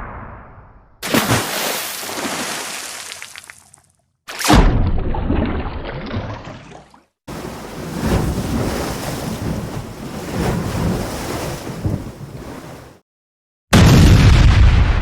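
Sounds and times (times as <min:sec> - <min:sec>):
water splashing: 0:01.0 - 0:13.0.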